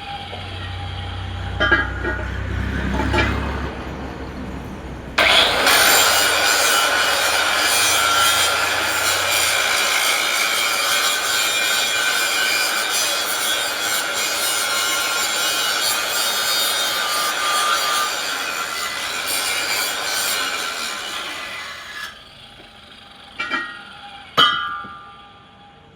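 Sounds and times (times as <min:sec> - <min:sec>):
power tool grinding metal: 0:05.2 - 0:24.4.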